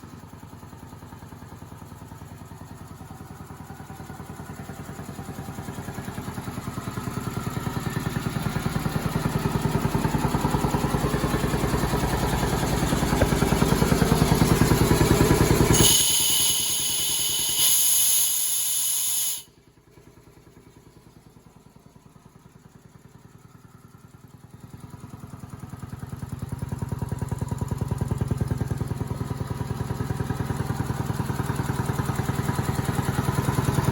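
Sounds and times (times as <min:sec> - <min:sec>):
air compressor pulsing: 0:10.5 - 0:19.5
hiss of escaping air: 0:15.7 - 0:19.5.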